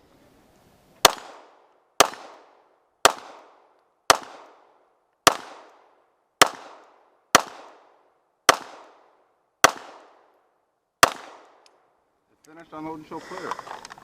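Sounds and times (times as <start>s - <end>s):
gunshots echoing: 1.0s - 10.4s, 11.0s - 11.6s.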